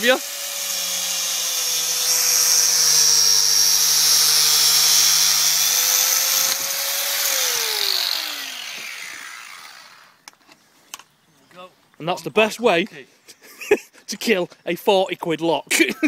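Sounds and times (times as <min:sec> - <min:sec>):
angle grinder cutting metal: 0:00.0 - 0:10.2
grinder winding down: 0:00.0 - 0:10.2.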